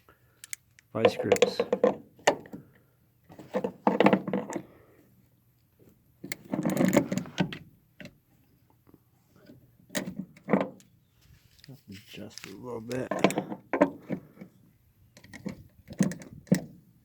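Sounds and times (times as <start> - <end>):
door latch clicking and rattling: 12.9 - 14.2, 15.2 - 16.8.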